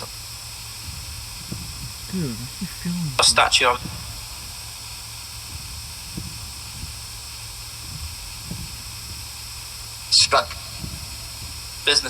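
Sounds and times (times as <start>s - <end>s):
steady hiss: 0.0s - 12.0s
faint short low sounds: 1.7s - 4.0s.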